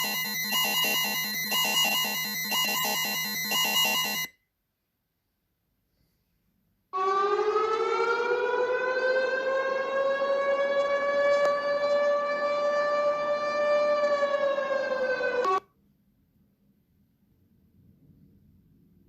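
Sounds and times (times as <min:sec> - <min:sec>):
warning siren wailing: 0:00.0 - 0:04.3, 0:07.0 - 0:15.6.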